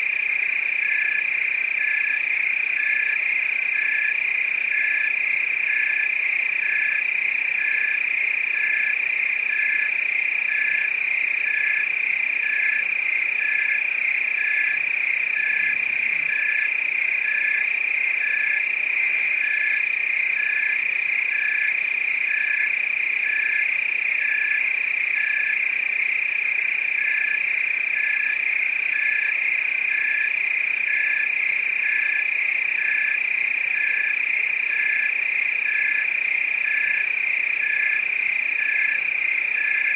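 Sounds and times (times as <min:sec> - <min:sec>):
short repeating frog call: 0:15.4 - 0:16.7.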